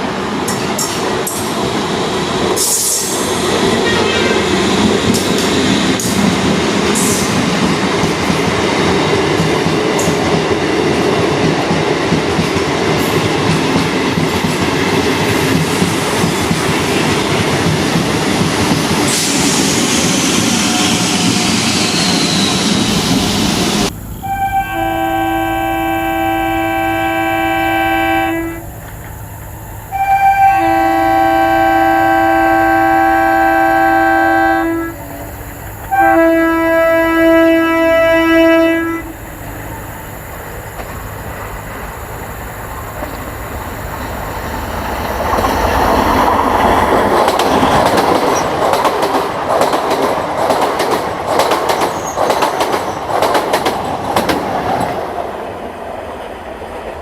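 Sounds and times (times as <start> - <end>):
train wheels clacking on tracks: 0.0 - 24.0, 39.5 - 57.0
train air horn blasts: 2.6 - 4.8, 24.2 - 28.8, 29.9 - 39.7.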